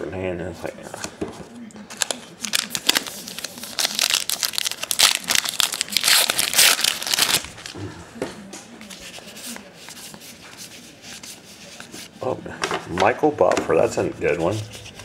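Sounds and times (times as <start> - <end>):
handling cards: 0.6 - 7.8, 8.6 - 15.0
wrapper tearing and crinkling: 1.9 - 7.8.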